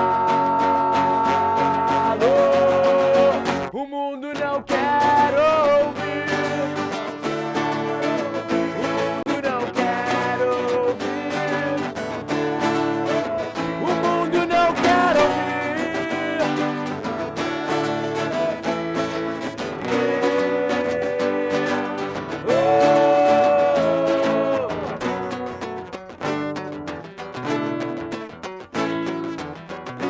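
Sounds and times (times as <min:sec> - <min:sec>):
guitars: 0:00.0 - 0:30.0
band playing a song: 0:04.8 - 0:25.6.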